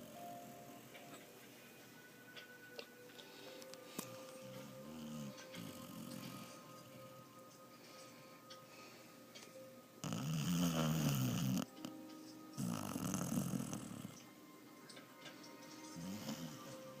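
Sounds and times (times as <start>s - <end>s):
loud snores: 4.7s - 7.0s, 10.0s - 11.7s, 12.6s - 14.2s, 16.0s - 17.0s.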